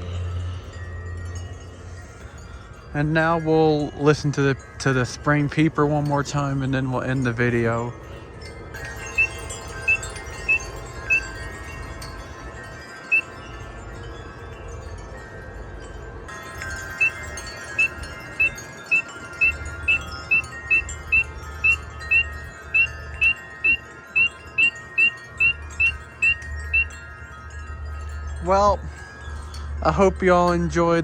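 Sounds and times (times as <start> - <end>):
low rumble of wind: 0.0 - 31.0
wind chimes ringing: 0.0 - 31.0
frog peeping: 9.9 - 11.2, 17.8 - 26.9.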